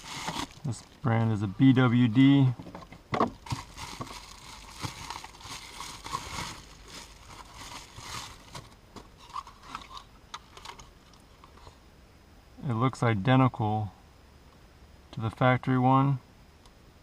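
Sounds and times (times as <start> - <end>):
packaging crinkling and rustling: 0.0 - 1.0, 3.2 - 11.3.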